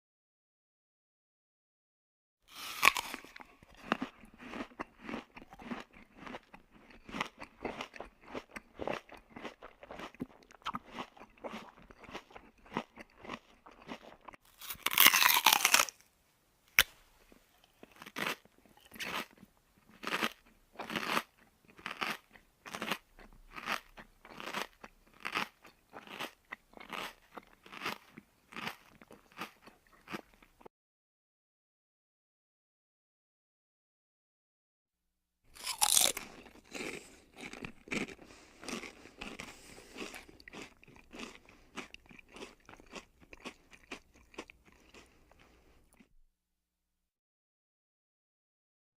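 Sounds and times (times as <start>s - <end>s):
mouth chewing food: 2.5s - 16.0s, 16.7s - 30.7s, 35.5s - 46.1s
crunchy chewing: 2.5s - 16.1s, 16.7s - 30.7s, 35.5s - 46.1s.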